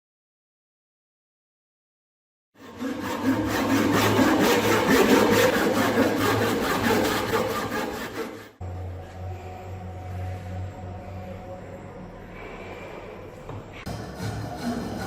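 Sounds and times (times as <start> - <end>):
hand tool working wood: 2.6 - 8.6, 13.9 - 15.0
steady low hum: 8.6 - 15.0.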